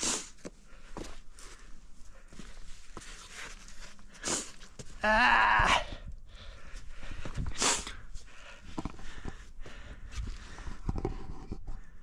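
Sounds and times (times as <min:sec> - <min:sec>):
footsteps on rocky ground: 0:00.4 - 0:05.0
heavy breathing: 0:05.7 - 0:11.1.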